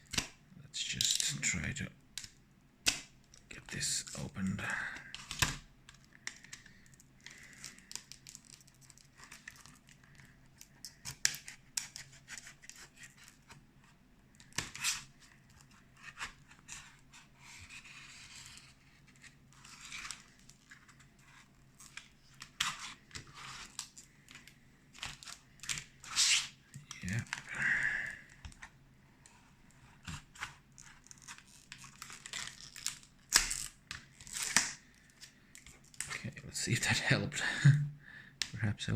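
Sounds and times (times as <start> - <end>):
plastic packaging crinkling: 6.3 - 10.3, 30.3 - 36.2
packaging tearing: 30.8 - 34.8.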